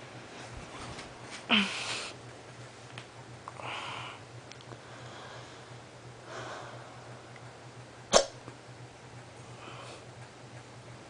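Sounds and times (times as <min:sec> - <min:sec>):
person breathing quietly: 0:03.6 - 0:07.2, 0:09.5 - 0:10.1
loud hiccup: 0:08.1 - 0:08.4.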